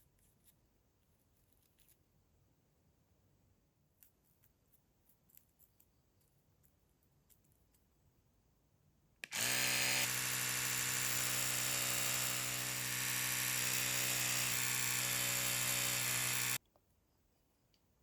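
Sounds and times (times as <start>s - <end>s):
small electric motor whirring: 9.2s - 16.6s.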